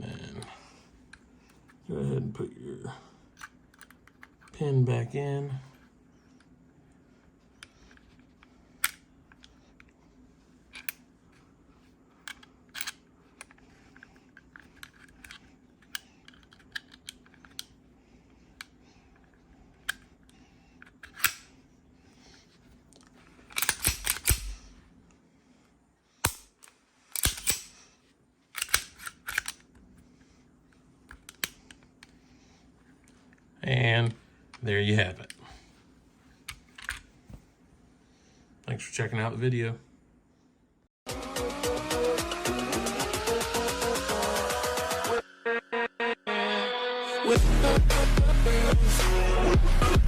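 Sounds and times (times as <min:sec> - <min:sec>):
metallic pistol parts clicking: 0:03.3 - 0:04.6, 0:07.6 - 0:10.0, 0:10.7 - 0:11.1, 0:12.2 - 0:17.8, 0:18.5 - 0:21.6, 0:23.4 - 0:24.8, 0:26.2 - 0:27.9, 0:28.5 - 0:29.8, 0:31.1 - 0:32.1, 0:36.5 - 0:37.1.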